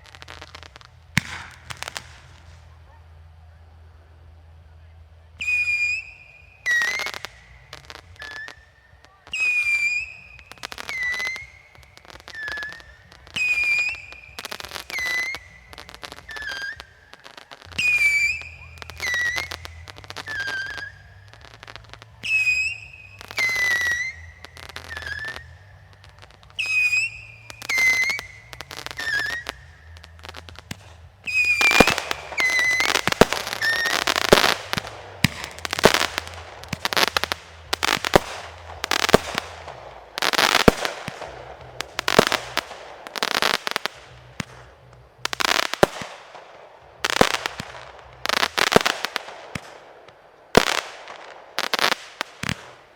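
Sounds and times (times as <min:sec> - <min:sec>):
fireworks banging: 0:00.0 - 0:52.9
firework whistle: 0:05.4 - 0:46.3.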